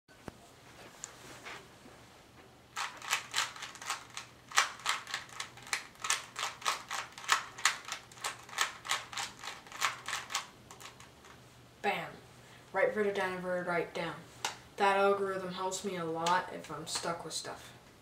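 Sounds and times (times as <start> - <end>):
puzzle cube clicking: 2.8 - 11.1.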